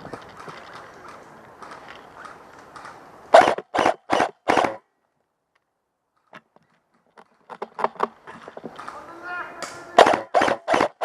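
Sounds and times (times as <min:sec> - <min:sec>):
airsoft gun bursts: 0:03.3 - 0:04.8, 0:09.9 - 0:11.0.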